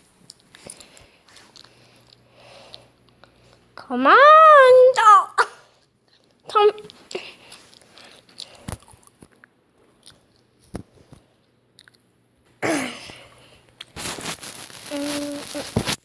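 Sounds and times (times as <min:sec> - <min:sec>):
jacket fabric rustling: 0:14.0 - 0:16.0.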